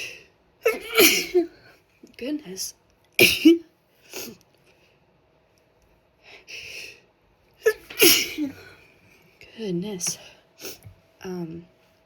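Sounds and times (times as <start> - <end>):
person sneezing: 0.7 - 1.5, 7.7 - 8.6.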